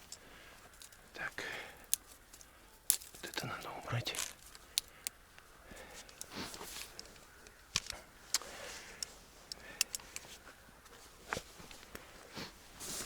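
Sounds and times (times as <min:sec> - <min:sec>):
clothing rustling: 0:10.0 - 0:13.0.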